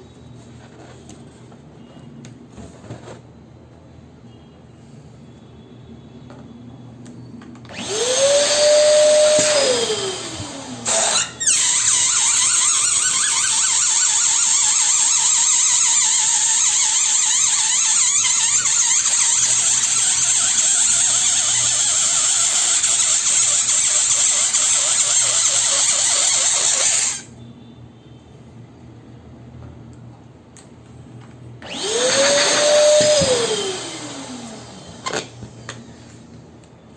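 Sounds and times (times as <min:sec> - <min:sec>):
electric balloon pump blowing air: 0:07.7 - 0:27.3, 0:31.6 - 0:36.1.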